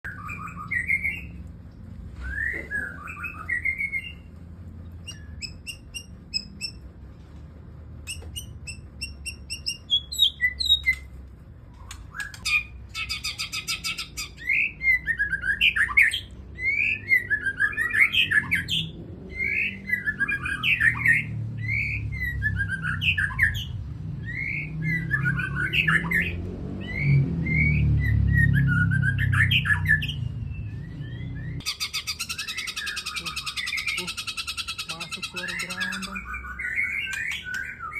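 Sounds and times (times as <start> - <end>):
bird singing: 0.0 - 1.4, 2.2 - 4.3, 4.9 - 6.9, 8.0 - 11.1, 11.8 - 37.9.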